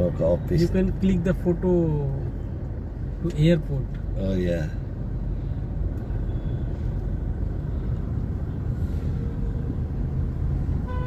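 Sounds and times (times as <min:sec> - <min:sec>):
traffic engines rumbling: 0:00.0 - 0:11.0
distant car horn: 0:10.8 - 0:11.0.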